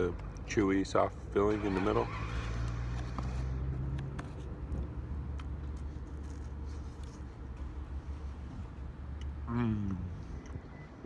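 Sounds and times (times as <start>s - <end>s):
faint clicks and rustles: 2.4s - 9.4s.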